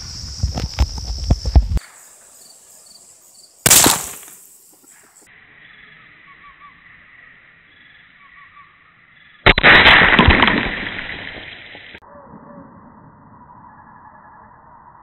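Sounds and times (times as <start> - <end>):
rifle shot: 3.7 - 4.3.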